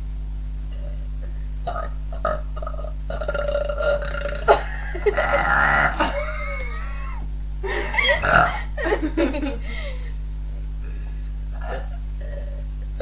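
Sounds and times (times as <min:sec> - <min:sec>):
girl burping: 0:01.7 - 0:07.2, 0:08.2 - 0:08.7.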